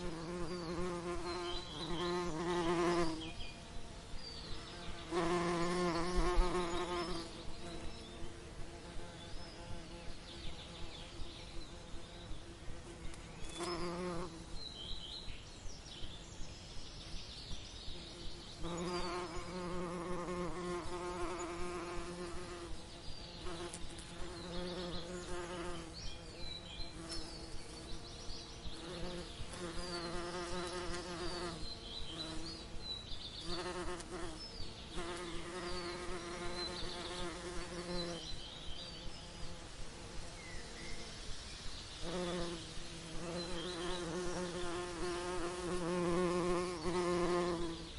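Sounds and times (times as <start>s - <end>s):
bees buzzing: 0.0s - 14.6s, 18.0s - 41.2s, 42.0s - 47.9s.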